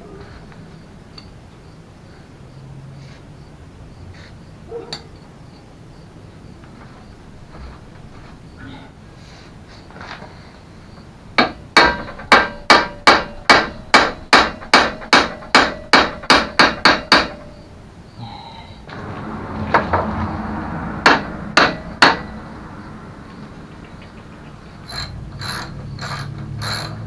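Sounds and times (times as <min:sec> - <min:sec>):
hammer striking metal: 0:11.4 - 0:17.7, 0:21.0 - 0:22.5.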